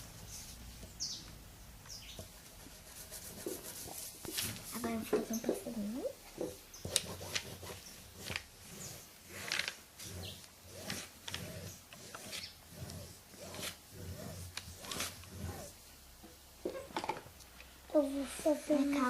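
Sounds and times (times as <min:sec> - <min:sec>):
pencil scratching on paper: 0:02.2 - 0:05.7, 0:06.8 - 0:15.8.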